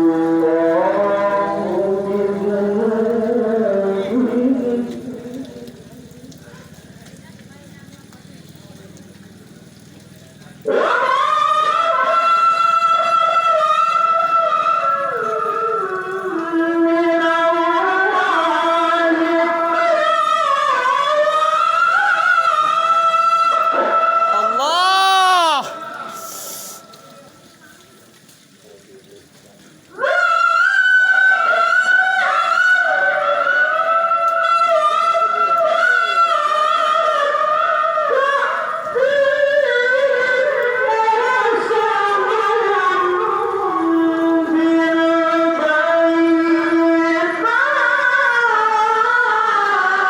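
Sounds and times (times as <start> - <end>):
high voice singing melismatic notes: 24.3 - 26.8.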